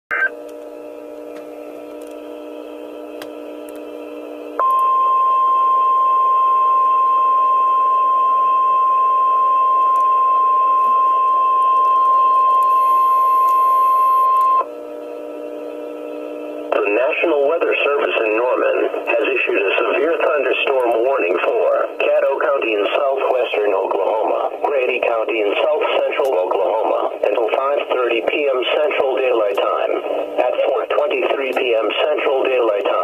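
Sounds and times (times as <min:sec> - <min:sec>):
faint radio hum: 0:00.1 - 0:00.4, 0:15.2 - 0:33.0
loud steady high alarm tone: 0:04.6 - 0:30.6.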